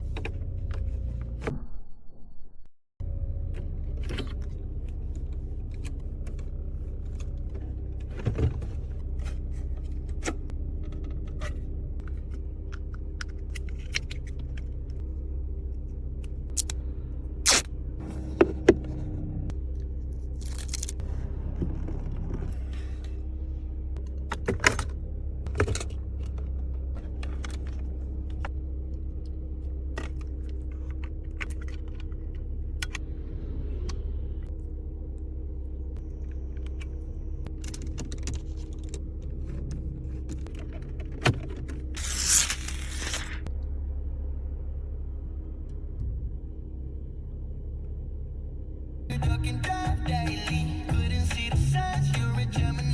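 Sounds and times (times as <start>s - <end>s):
car cabin rumble: 0.0s - 2.0s, 3.0s - 52.9s
clicks and short scrapes: 17.5s - 17.7s, 40.3s - 43.5s.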